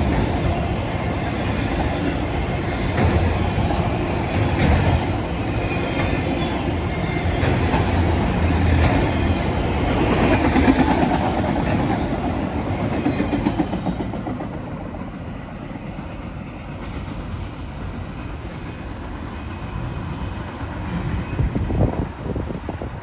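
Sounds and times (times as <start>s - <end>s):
wheels clacking over rails: 0.0s - 14.9s
freight cars rolling past: 0.0s - 15.2s.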